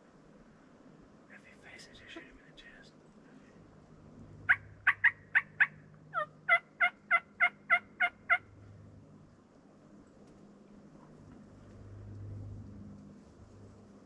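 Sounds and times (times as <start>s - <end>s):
turkey yelps: 4.5s - 8.5s.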